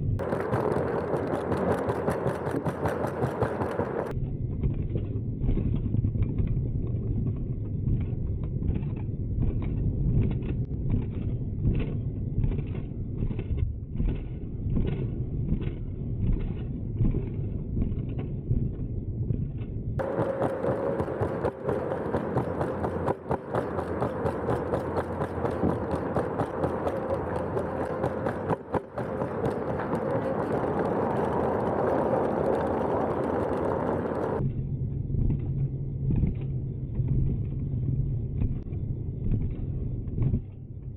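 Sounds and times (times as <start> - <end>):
tyre rumble: 0.1 - 40.9
steady motor whine: 20.0 - 34.4.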